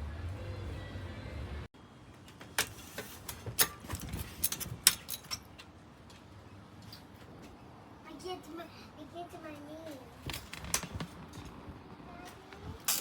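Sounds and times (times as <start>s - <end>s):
metal parts clicking and rattling: 3.2s - 5.7s, 12.8s - 13.0s.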